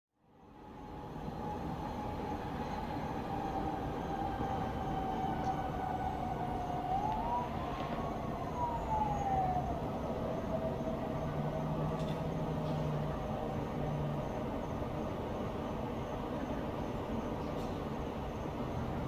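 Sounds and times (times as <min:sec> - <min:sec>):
distant siren wailing: 0:00.6 - 0:17.2
distant traffic rumble: 0:01.9 - 0:19.0.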